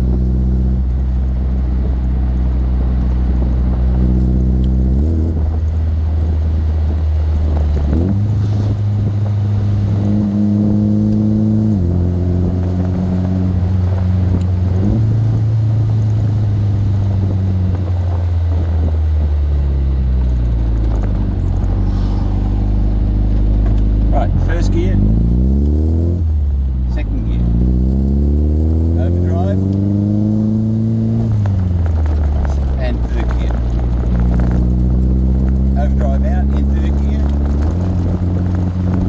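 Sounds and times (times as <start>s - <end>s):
car engine pulling: 0.0s - 39.0s.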